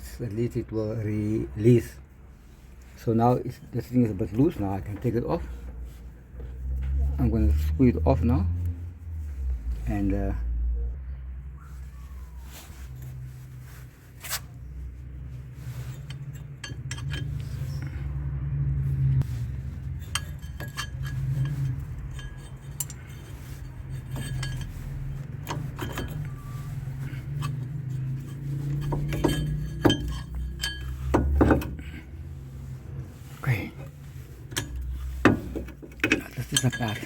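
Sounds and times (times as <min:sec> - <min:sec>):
steady low rumble: 0:01.5 - 0:37.0
metal tools clinking: 0:15.3 - 0:18.1, 0:19.3 - 0:32.0, 0:34.2 - 0:37.0.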